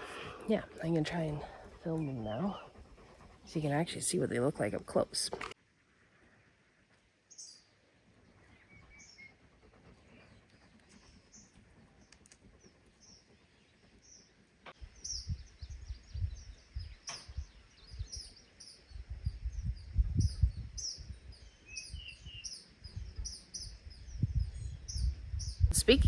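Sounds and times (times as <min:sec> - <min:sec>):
small birds chirping: 0:00.0 - 0:05.3, 0:06.1 - 0:26.0
low rumble on microphone: 0:14.8 - 0:18.2, 0:18.9 - 0:26.0.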